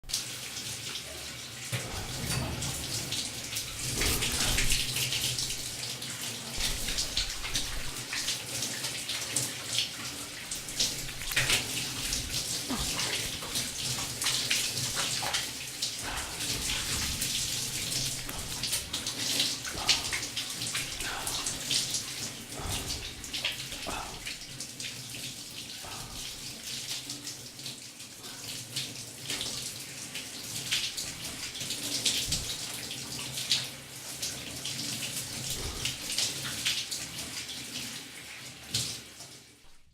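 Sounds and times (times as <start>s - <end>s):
shower spray hissing: 1.8s - 9.3s, 10.1s - 24.6s, 25.8s - 26.5s
water splashing: 1.8s - 24.8s, 25.8s - 26.6s.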